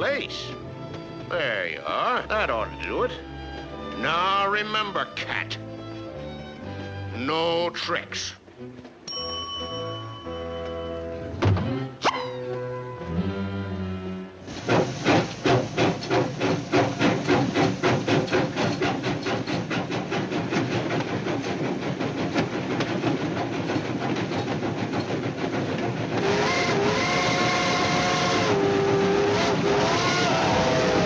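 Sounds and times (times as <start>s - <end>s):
cartoon steam locomotive chugging: 0.0s - 3.4s, 4.0s - 5.7s, 12.0s - 31.0s
steam train whistle: 26.1s - 31.0s.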